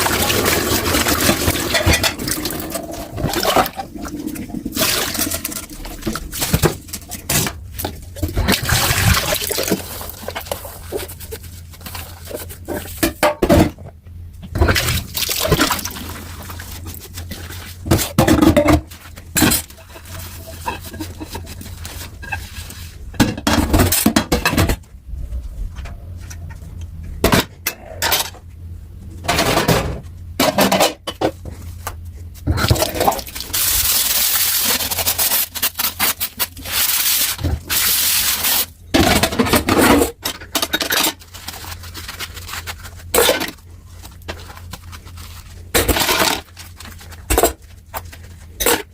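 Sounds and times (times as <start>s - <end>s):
dishes clattering: 1.2s - 2.6s.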